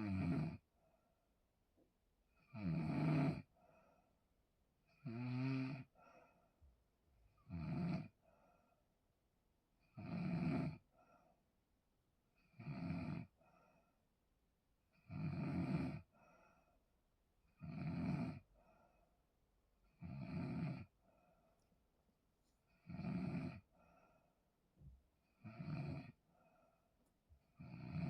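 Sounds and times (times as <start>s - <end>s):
person snoring: 0.0s - 0.6s, 22.8s - 23.7s, 25.4s - 26.2s, 27.6s - 28.0s.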